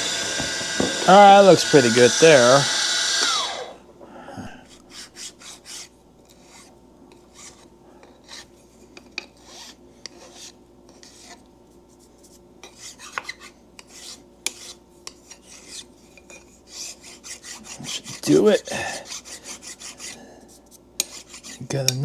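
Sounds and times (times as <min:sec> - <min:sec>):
file scraping metal: 0:00.0 - 0:03.5, 0:04.7 - 0:06.7, 0:12.8 - 0:20.2, 0:21.0 - 0:21.7.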